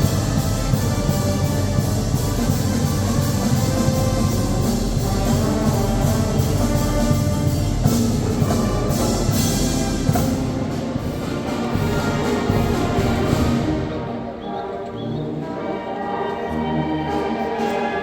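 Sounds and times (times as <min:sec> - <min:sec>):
drum and cymbal strikes: 0:00.0 - 0:13.7
wind band playing: 0:00.0 - 0:18.0.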